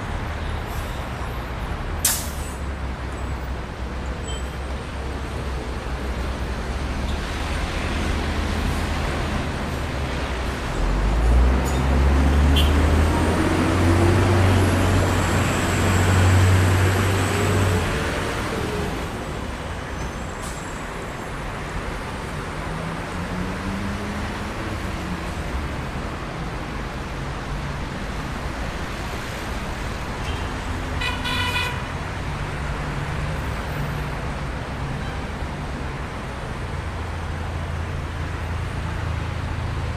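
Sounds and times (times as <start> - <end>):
vehicle engines rumbling in traffic: 0.0 - 39.9
car horn toot: 30.3 - 31.9.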